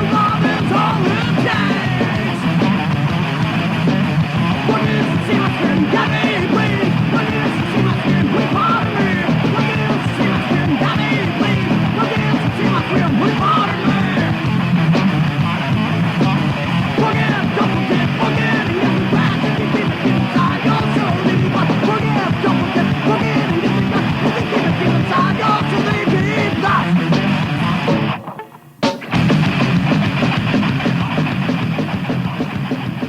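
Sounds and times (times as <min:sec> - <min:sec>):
person singing: 0:00.0 - 0:03.4, 0:04.0 - 0:14.6, 0:15.5 - 0:28.0
bass guitar: 0:00.0 - 0:33.0
distorted guitar: 0:00.0 - 0:33.0
drums: 0:00.0 - 0:33.0.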